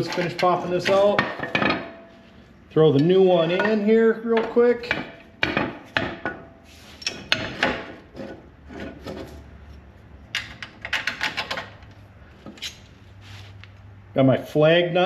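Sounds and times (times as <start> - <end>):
metal tools clinking and scraping: 0.0 - 5.2, 6.2 - 9.4.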